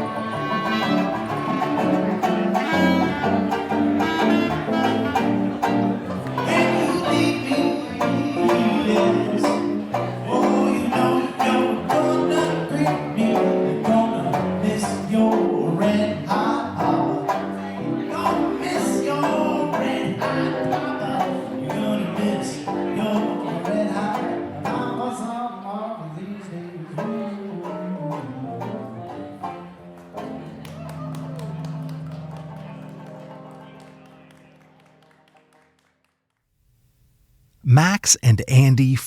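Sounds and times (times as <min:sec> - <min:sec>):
jazz band playing: 0:00.0 - 0:25.0
plucked strings: 0:00.0 - 0:25.1.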